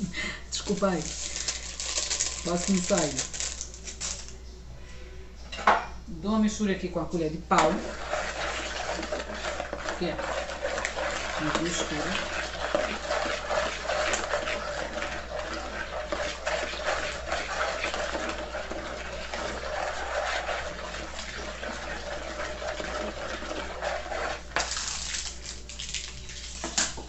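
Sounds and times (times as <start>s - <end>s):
liquid swishing in bowl: 7.5s - 25.4s.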